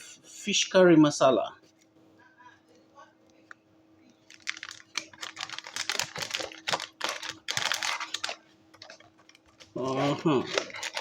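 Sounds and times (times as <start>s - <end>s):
spice container rattling: 4.3s - 11.0s.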